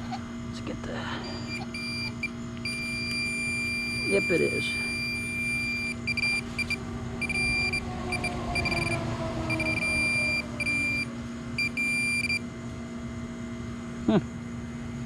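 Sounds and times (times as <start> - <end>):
metal detector pinpointer beeping: 1.2 - 12.4.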